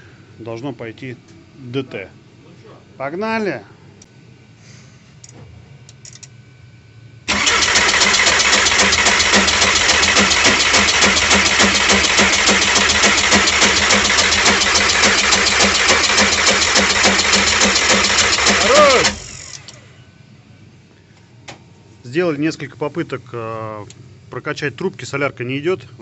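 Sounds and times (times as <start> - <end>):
diesel engine cranking: 7.3 - 19.9.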